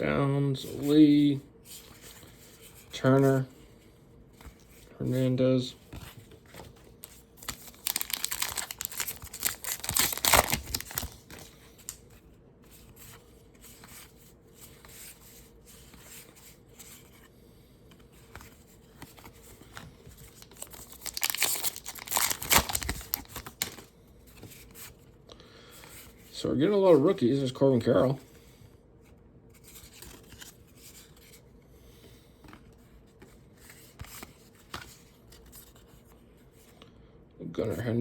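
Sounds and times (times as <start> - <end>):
foil wrapper tearing and crinkling: 7.4 - 11.4, 20.4 - 23.9.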